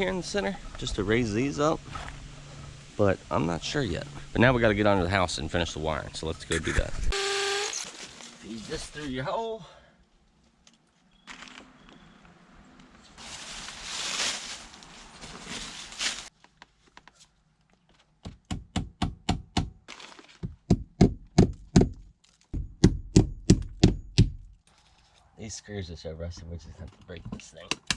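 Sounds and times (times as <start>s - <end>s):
scraping and rustling: 7.8s - 9.2s, 13.1s - 18.0s.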